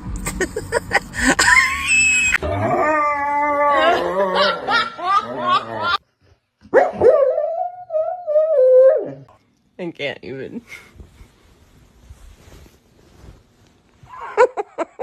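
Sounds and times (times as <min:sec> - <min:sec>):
dog whining and howling: 0:01.9 - 0:04.7, 0:06.7 - 0:09.3.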